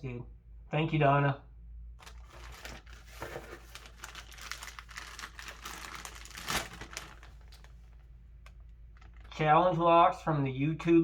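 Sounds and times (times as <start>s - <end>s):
packaging crinkling: 2.0s - 9.4s.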